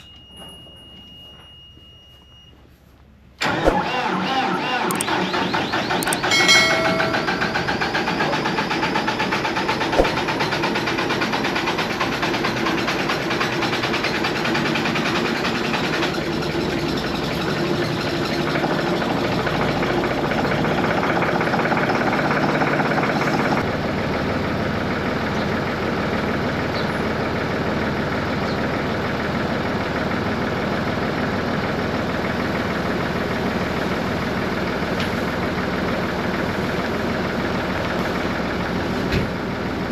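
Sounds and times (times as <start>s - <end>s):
tractor diesel engine running: 3.3s - 39.9s
brief higher tone: 6.2s - 8.4s.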